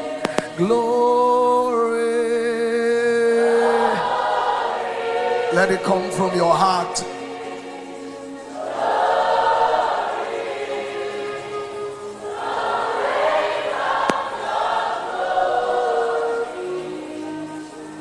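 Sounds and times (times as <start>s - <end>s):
choir singing a slow chant: 0.0s - 18.0s
brief click: 0.2s - 0.5s.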